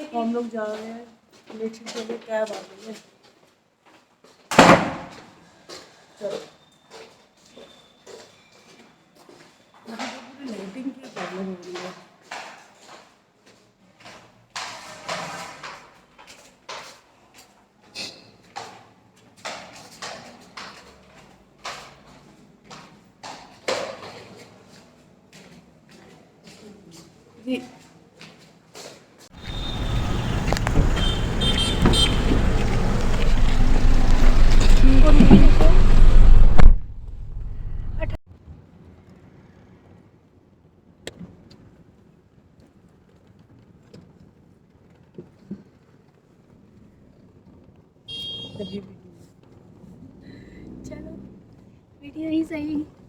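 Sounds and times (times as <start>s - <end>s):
footsteps on hard floor: 29.4s - 37.4s
car driving noise: 29.4s - 38.2s
steady hum: 29.4s - 38.2s.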